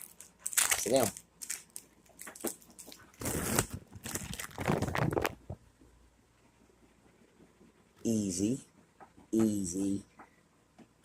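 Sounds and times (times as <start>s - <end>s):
plastic wrapper crinkling: 0.0s - 5.6s.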